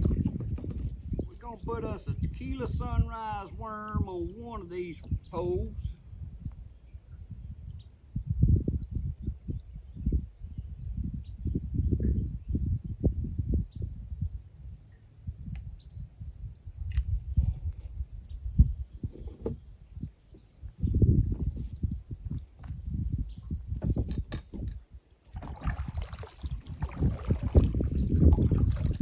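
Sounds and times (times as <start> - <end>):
insects droning: 0.0 - 29.0.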